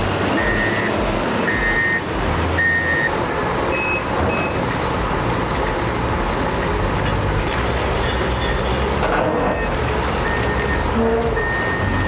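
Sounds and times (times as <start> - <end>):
heavy machine engine: 0.0 - 12.0
reversing alarm beeping: 0.3 - 5.0, 7.9 - 12.0
short high beeps: 0.4 - 2.0, 2.6 - 3.1, 3.7 - 4.6, 9.5 - 12.0.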